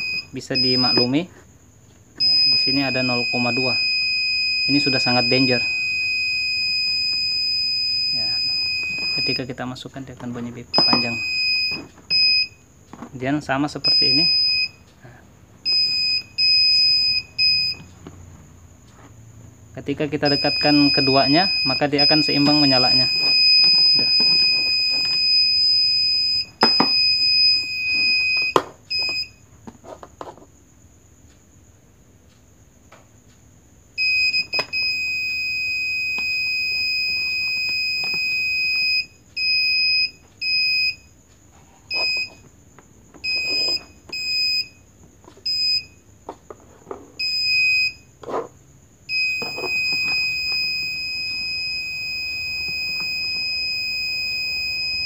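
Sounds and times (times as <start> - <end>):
parking sensor beeping: 0.0 - 1.3, 2.2 - 10.0, 10.6 - 12.6, 13.7 - 14.9, 15.6 - 18.0, 19.8 - 29.4, 34.0 - 41.1, 41.9 - 42.5, 43.2 - 44.8, 47.2 - 48.1, 49.1 - 55.0.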